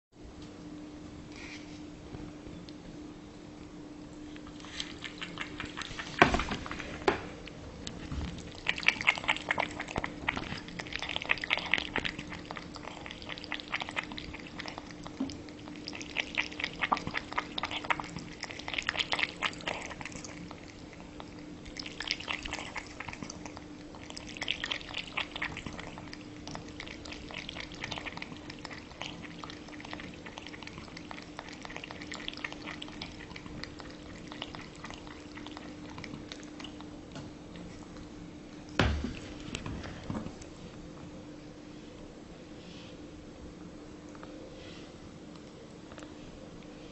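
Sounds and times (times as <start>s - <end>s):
steady low hum: 0.2s - 46.9s
cat lapping water: 4.4s - 38.1s.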